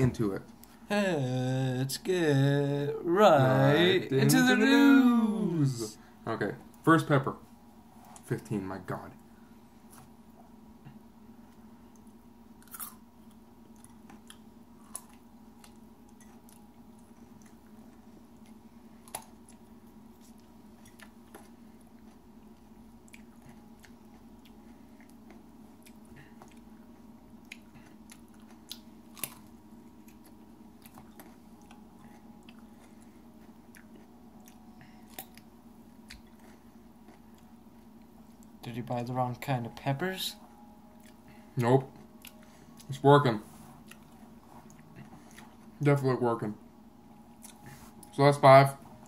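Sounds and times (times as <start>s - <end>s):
low steady hum: 0.0s - 49.0s
person chewing crunchy peppers: 11.9s - 38.6s, 41.0s - 41.3s, 41.9s - 43.0s, 43.8s - 45.7s, 47.3s - 48.1s.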